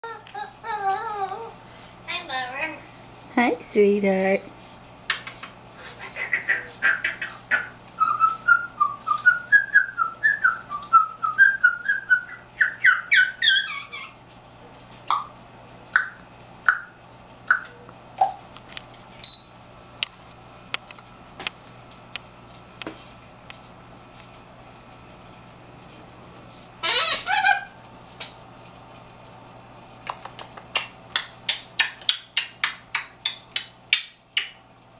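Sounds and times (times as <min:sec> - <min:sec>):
parrot chirps and clicks: 0:05.1 - 0:05.6, 0:06.2 - 0:09.8, 0:15.0 - 0:15.3, 0:15.9 - 0:18.4, 0:30.0 - 0:34.6
parrot whistling: 0:06.2 - 0:14.2, 0:26.8 - 0:27.8.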